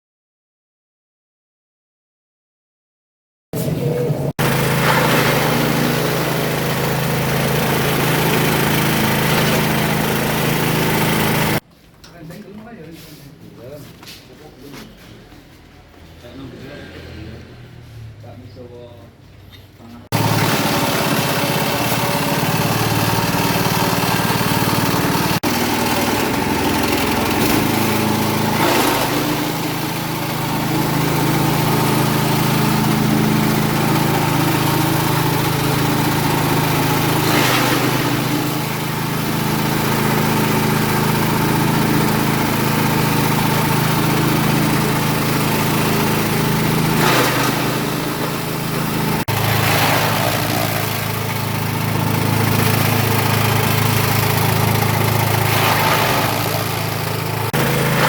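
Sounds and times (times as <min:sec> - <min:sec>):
grinding machine humming: 0:03.8 - 0:11.6, 0:20.1 - 0:58.0.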